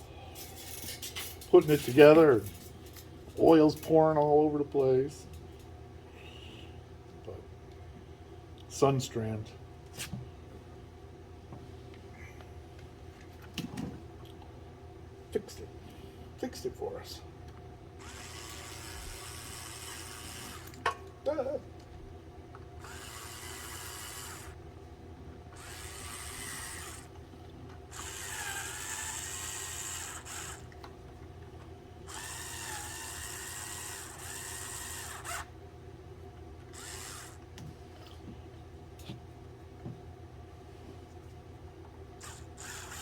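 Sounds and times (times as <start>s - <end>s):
steady low hum: 0.0s - 43.0s
cordless drill whining: 18.0s - 20.8s, 22.8s - 24.6s, 25.5s - 27.1s, 27.9s - 30.7s, 32.1s - 35.5s, 36.7s - 37.4s, 42.2s - 43.0s.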